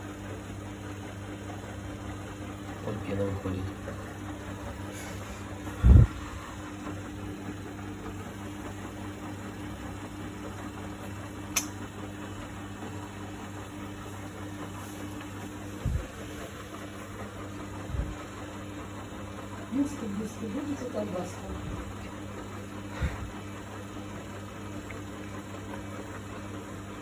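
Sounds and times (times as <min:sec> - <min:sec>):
washing machine hum: 0:00.0 - 0:27.0
short sharp click: 0:11.5 - 0:11.8.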